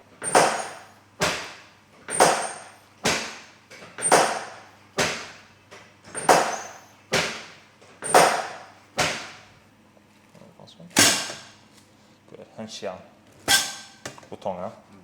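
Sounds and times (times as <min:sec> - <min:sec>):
sharp knocks: 0:00.2 - 0:09.5, 0:11.0 - 0:11.6.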